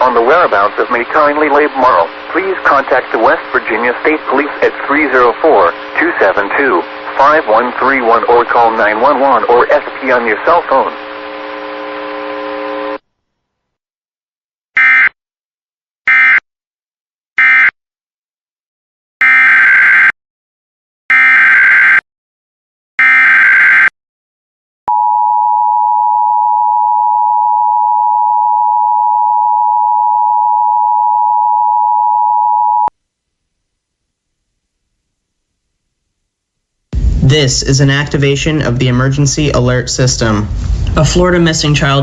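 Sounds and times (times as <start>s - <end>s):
emergency alert data bursts: 0.0s - 13.0s.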